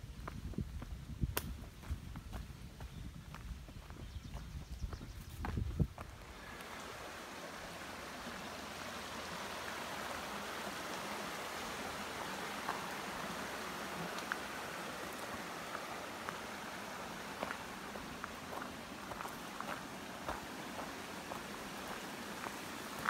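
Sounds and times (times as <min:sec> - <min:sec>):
faint sharp clicks: 0:01.3 - 0:01.6
rushing water: 0:06.0 - 0:23.0.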